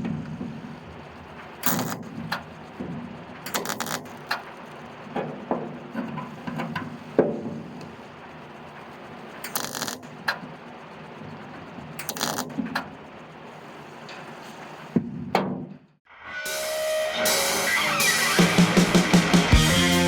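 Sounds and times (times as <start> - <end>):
welder crackling: 0.2 - 5.1, 6.3 - 14.2.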